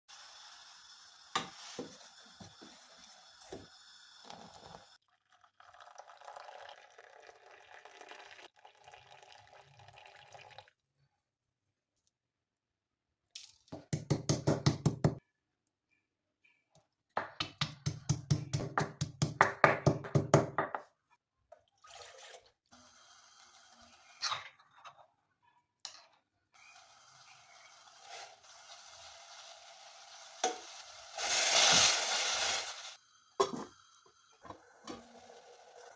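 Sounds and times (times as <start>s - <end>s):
water running: 0.2s - 10.7s.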